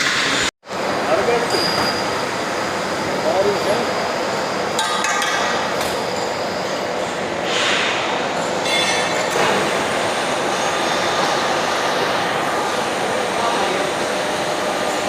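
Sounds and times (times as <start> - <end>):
steady background noise: 0.0 - 15.0.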